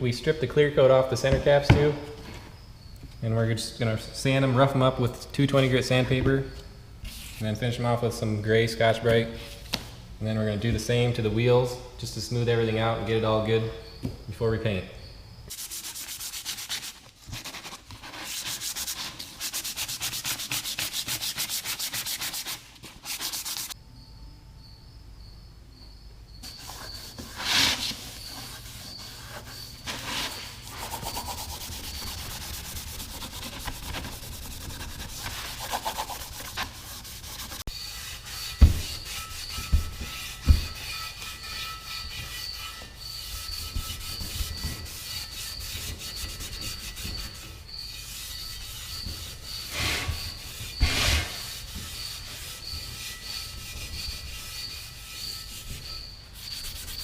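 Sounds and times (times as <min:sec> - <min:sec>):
sandpaper rubbing metal: 0:15.5 - 0:23.8, 0:26.4 - 0:57.0
sharp thumps: 0:38.3 - 0:41.2.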